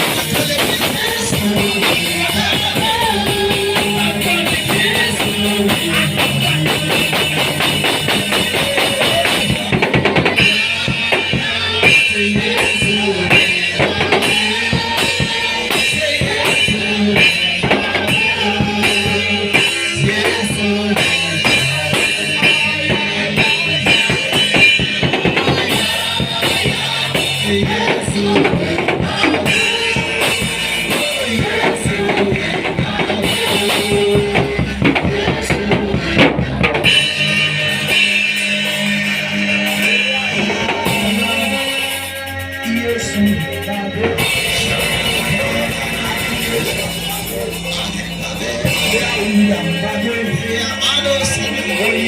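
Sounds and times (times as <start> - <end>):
drum kit steady beat: 0.0 - 52.0
sustained keyboard chords: 0.0 - 52.0.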